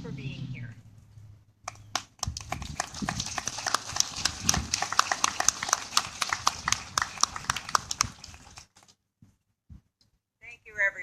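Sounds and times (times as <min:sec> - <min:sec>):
audience applauding: 0:01.7 - 0:08.8.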